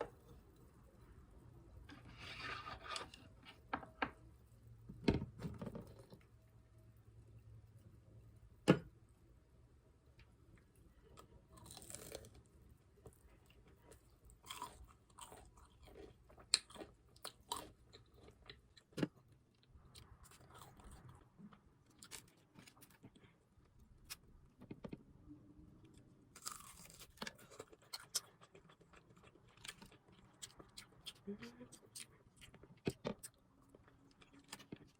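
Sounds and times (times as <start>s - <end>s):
crunchy chewing: 11.1s - 23.4s, 26.4s - 34.9s.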